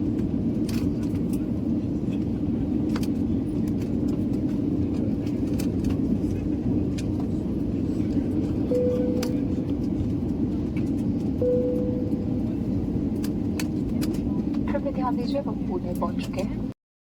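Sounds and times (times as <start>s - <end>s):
vehicle cabin rumble: 0.1s - 16.7s
short single-tone beeps: 8.7s - 9.8s, 11.4s - 12.5s.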